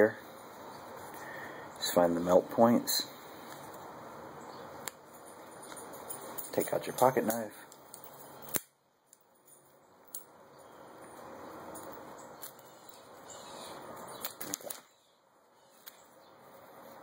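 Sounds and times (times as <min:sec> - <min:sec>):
rustling and scraping: 0:04.8 - 0:10.3.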